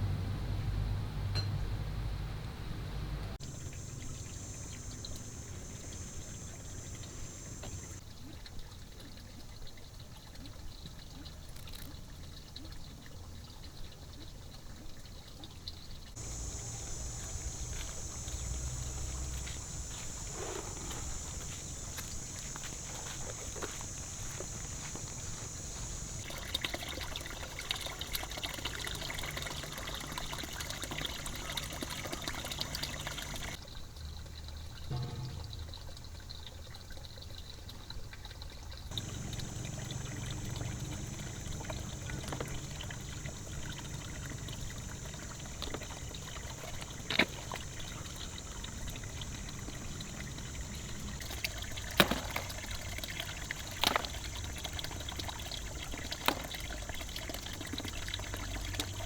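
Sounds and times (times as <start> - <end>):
water pouring and trickling: 3.4 - 59.0
sharp knocks: 34.9 - 35.9.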